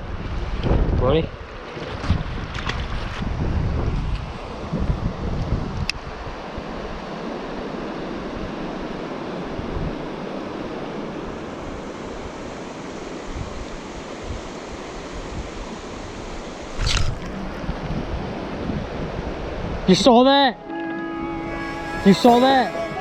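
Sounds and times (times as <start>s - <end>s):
wind buffeting microphone: 0.0s - 7.0s, 16.8s - 19.9s.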